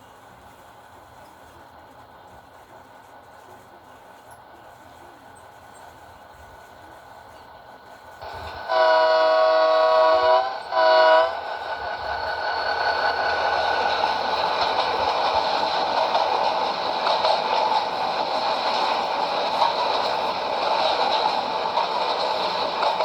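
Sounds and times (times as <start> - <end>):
train noise: 0.0 - 23.0
locomotive air horn: 8.2 - 11.4.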